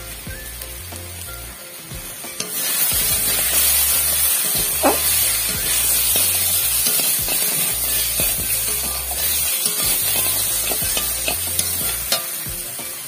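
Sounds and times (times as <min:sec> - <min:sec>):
crabs sizzling in oil: 0:00.0 - 0:13.0
quiet background music: 0:00.0 - 0:13.0
utensil scrape: 0:02.4 - 0:12.2.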